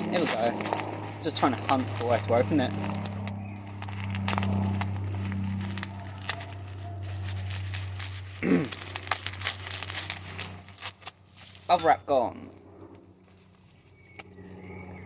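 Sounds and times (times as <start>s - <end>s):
bubble wrap crinkling: 0.0s - 11.9s.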